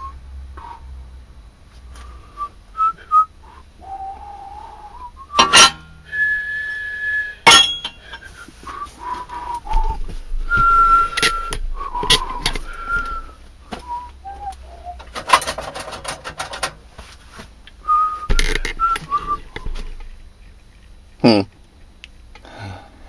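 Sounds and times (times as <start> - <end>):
person whistling: 2.2 - 15.2, 17.8 - 19.8
knocks and clinks: 5.4 - 6.0, 7.4 - 8.3, 15.0 - 16.8
clatter: 15.0 - 16.8.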